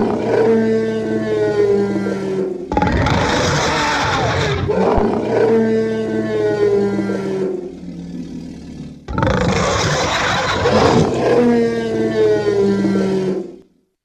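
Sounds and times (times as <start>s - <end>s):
monster roaring: 0.0s - 13.6s
low bellow: 0.0s - 13.7s
harsh hissy roar: 1.2s - 4.7s, 9.2s - 12.6s.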